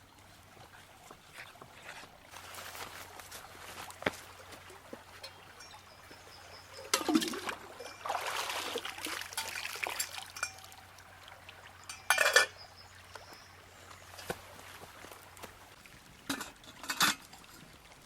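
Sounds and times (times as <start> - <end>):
liquid pouring and splashing: 6.8 - 12.5
cookware clattering: 11.9 - 12.5.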